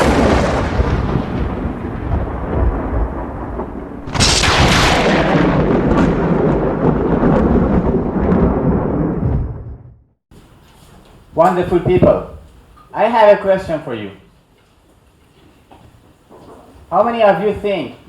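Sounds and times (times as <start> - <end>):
loud rumbling booms: 0.0 - 10.2, 11.7 - 12.4.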